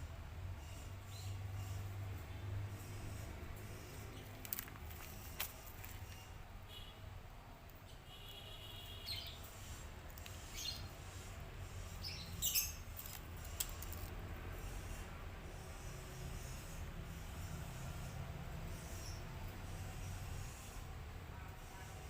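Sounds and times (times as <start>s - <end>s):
small birds chirping: 8.9s - 14.0s.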